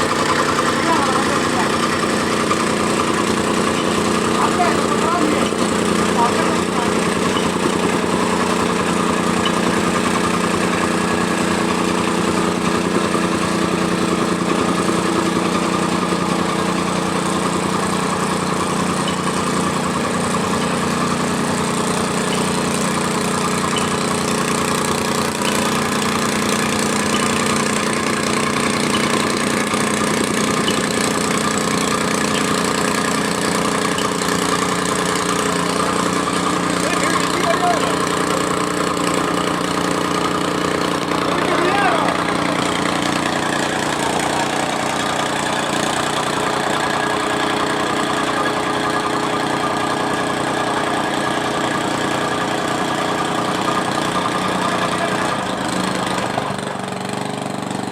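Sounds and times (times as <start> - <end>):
compactor engine running: 0.0 - 57.9.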